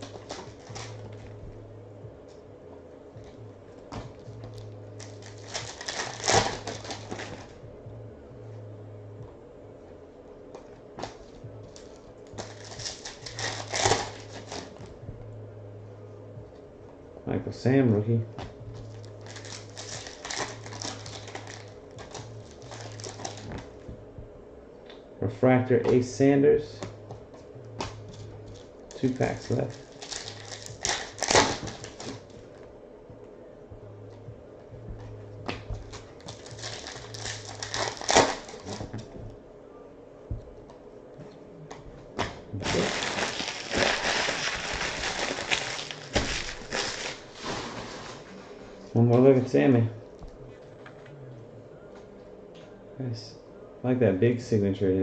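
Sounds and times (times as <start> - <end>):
low steady hum: 0.0 - 55.0
wrapper tearing and crinkling: 4.5 - 7.5, 11.8 - 14.7, 19.2 - 23.5, 28.9 - 32.3, 36.2 - 38.9, 42.6 - 48.3
cards being flipped through: 42.2 - 48.3.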